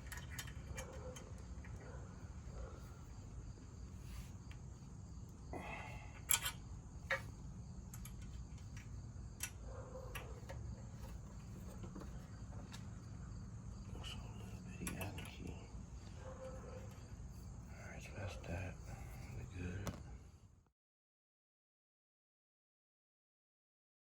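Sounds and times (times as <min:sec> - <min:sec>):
metal clicks of hand tools: 0:00.0 - 0:01.8, 0:06.2 - 0:10.6
steady high hum: 0:00.0 - 0:20.6.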